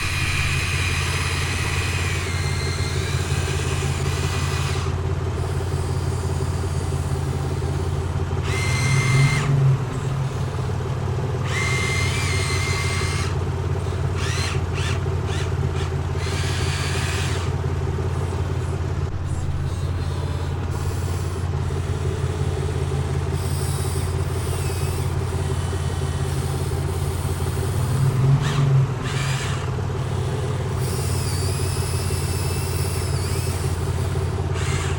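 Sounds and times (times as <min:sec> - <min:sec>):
high whine: 0:00.0 - 0:10.6
excavator engine droning: 0:00.0 - 0:34.9.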